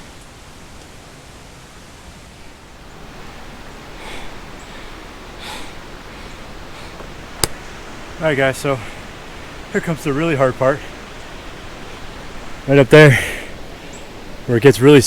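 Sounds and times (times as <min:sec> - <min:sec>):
rushing background noise: 0:00.0 - 0:15.0
heavy exhales: 0:03.9 - 0:07.0, 0:13.1 - 0:13.6.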